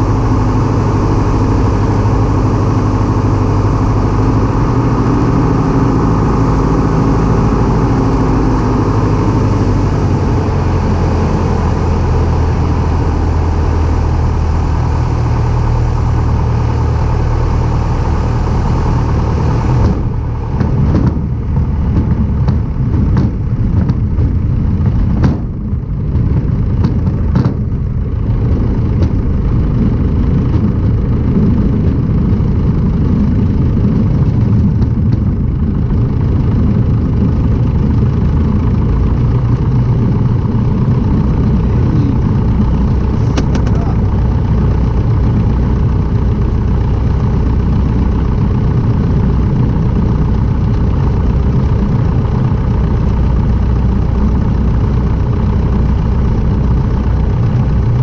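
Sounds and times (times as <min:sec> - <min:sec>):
light aircraft piston engine: 0:00.0 - 0:58.0
irregular sharp knocks and clicks: 0:19.8 - 0:27.8, 0:43.2 - 0:43.8.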